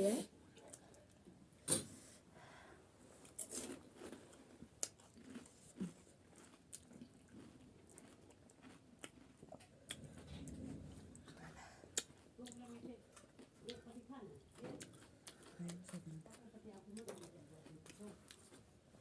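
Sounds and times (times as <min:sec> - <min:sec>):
crisp shells crunching and chewing: 0:03.3 - 0:10.1, 0:12.0 - 0:18.7.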